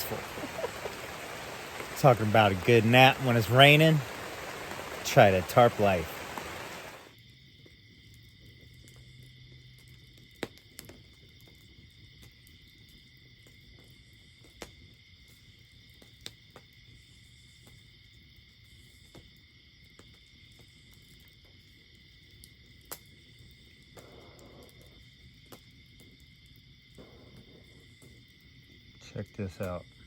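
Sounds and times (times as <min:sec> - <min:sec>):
raindrops ticking: 0:00.0 - 0:07.1
insects or frogs calling: 0:00.0 - 0:07.2, 0:22.1 - 0:30.0.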